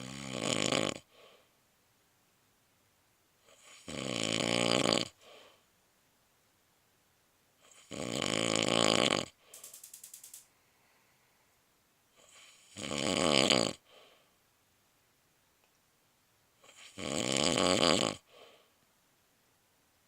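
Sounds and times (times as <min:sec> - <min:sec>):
woman snoring: 0:00.0 - 0:01.1, 0:03.5 - 0:05.2, 0:07.7 - 0:09.4, 0:12.3 - 0:13.9, 0:16.6 - 0:18.3
rapid fluttering sound: 0:09.5 - 0:10.5.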